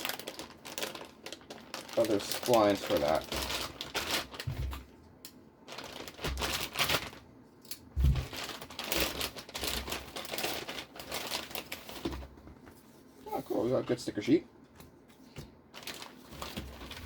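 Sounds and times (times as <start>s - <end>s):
plastic bags rustling and crinkling: 0.0s - 5.0s, 5.6s - 7.3s, 8.0s - 12.8s, 15.7s - 17.0s.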